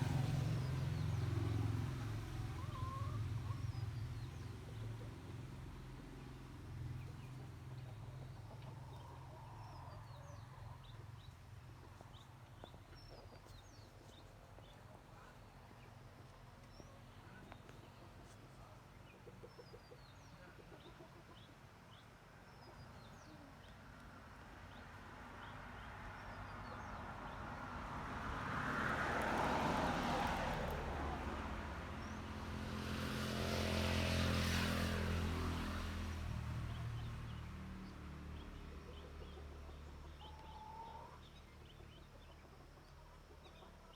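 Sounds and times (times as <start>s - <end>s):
low engine rumble: 0.0s - 19.1s
small birds chirping: 0.0s - 27.5s, 36.2s - 43.9s
vehicles passing: 0.0s - 43.9s.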